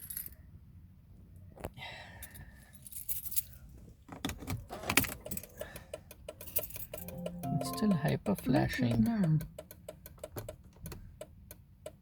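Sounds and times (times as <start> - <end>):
car keys jangling: 2.8 - 7.2.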